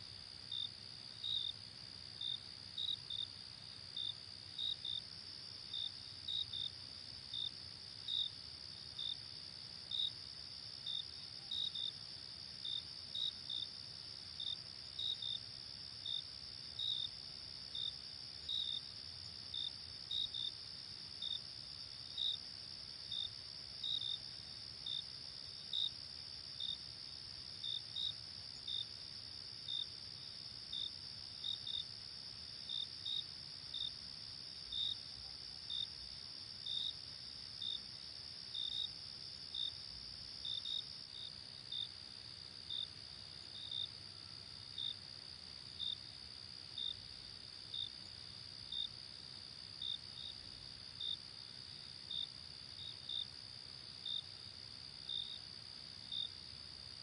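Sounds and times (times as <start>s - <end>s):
crickets trilling and chirping: 0.0s - 57.0s.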